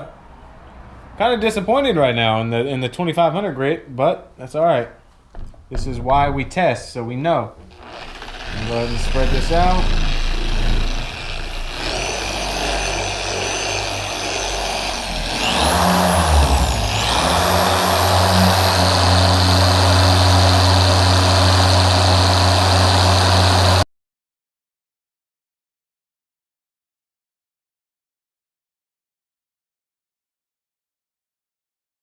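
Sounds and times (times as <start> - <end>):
machine polisher running: 7.7 - 23.8.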